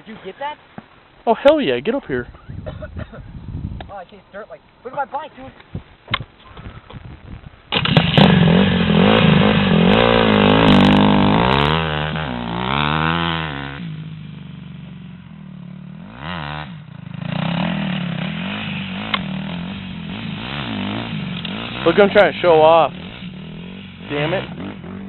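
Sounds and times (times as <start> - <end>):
dirt bike engine revving: 7.7 - 25.0.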